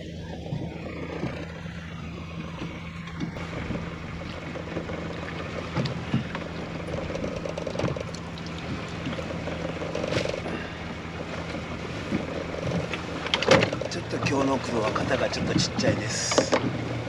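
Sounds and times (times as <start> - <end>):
boat engine humming: 0.0 - 17.0
water noise: 0.0 - 17.0
knocks and rattles: 4.5 - 10.4.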